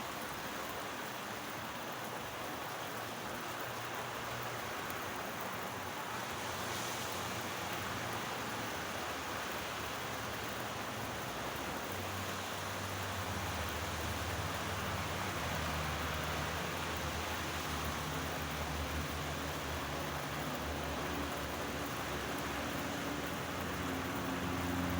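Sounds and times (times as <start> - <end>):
heavy rain falling: 0.0 - 24.9.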